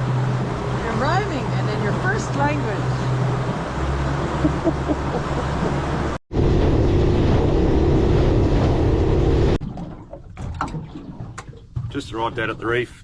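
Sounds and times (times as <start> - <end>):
rushing water: 0.0 - 6.2
outboard motor drone: 0.0 - 10.5
wind: 0.0 - 13.0.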